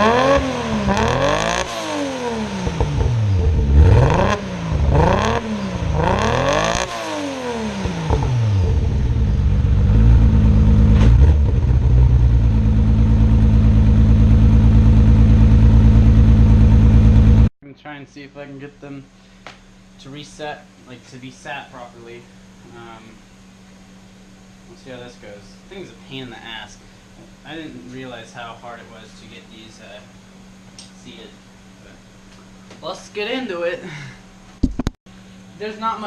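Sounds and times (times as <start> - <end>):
car engine revving then idling: 0.0 - 17.5.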